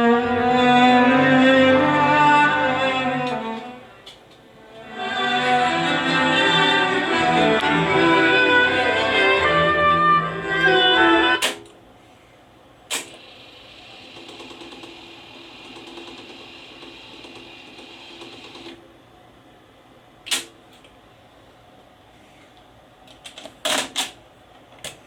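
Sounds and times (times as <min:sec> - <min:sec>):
cassette music playback: 0:00.0 - 0:11.6
tape transport whirring: 0:00.0 - 0:11.8.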